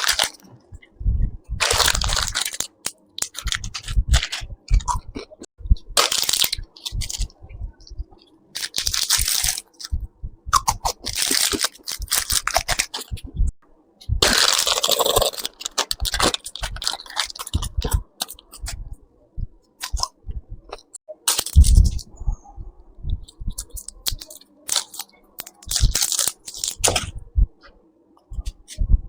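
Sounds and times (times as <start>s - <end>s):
wrapper rustling and tearing: 0.0s - 0.4s, 1.6s - 4.4s, 6.0s - 7.3s, 8.6s - 9.9s, 10.8s - 13.1s, 14.2s - 18.4s, 21.3s - 22.0s, 23.8s - 27.0s
chocolate crunching and chewing: 0.0s - 0.6s, 1.6s - 7.4s, 8.1s - 13.3s, 14.2s - 18.8s, 19.8s - 22.0s, 23.6s - 27.1s.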